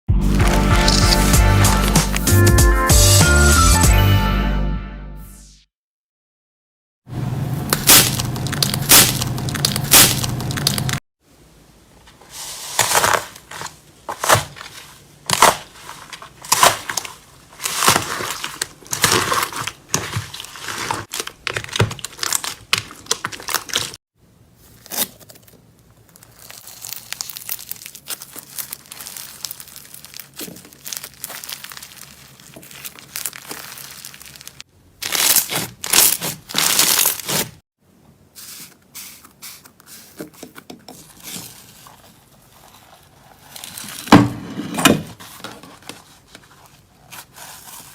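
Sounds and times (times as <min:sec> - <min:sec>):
slime crackling and popping: 0:07.7 - 0:11.0, 0:16.4 - 0:24.0, 0:25.9 - 0:37.6.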